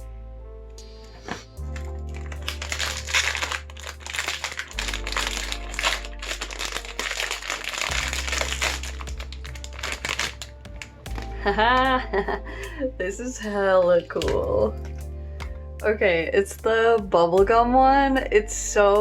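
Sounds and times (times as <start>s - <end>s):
background music with low bass: 0.0s - 19.0s
plastic wrapper crinkling: 1.2s - 11.8s.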